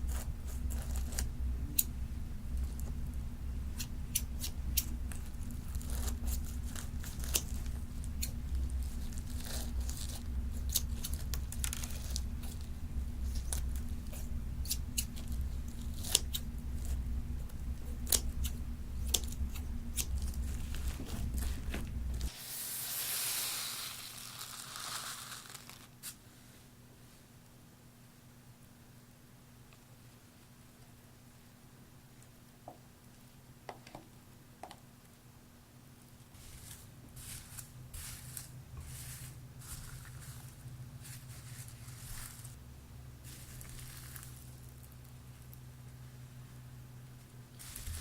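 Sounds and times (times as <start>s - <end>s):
slime stretching and tearing: 22.5s - 26.1s
slime crackling and popping: 22.9s - 26.1s.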